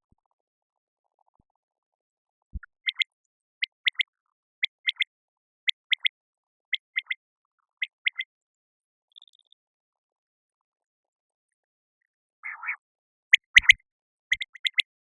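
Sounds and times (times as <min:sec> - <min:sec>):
quail calling: 0:02.8 - 0:03.0, 0:04.8 - 0:05.0, 0:05.8 - 0:06.1, 0:06.7 - 0:07.2, 0:07.8 - 0:08.2, 0:12.4 - 0:15.0.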